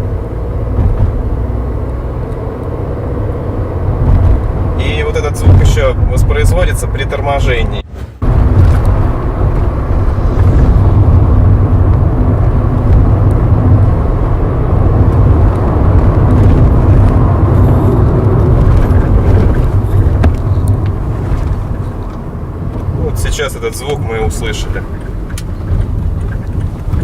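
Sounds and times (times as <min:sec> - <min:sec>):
road and tyre rumble: 0:00.0 - 0:27.0
chassis knocks and rattles: 0:18.0 - 0:22.8, 0:24.8 - 0:27.0.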